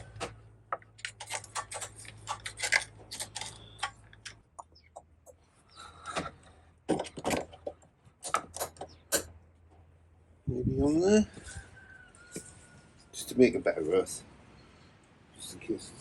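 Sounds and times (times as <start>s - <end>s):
hand tools clicking and clattering: 0.8s - 5.4s.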